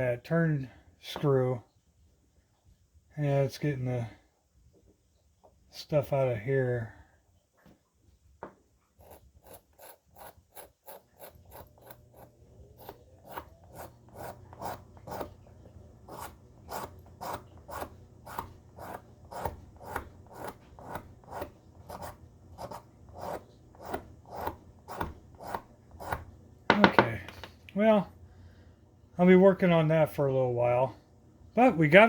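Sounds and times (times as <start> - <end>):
scraping wooden handle: 9.0 - 27.6.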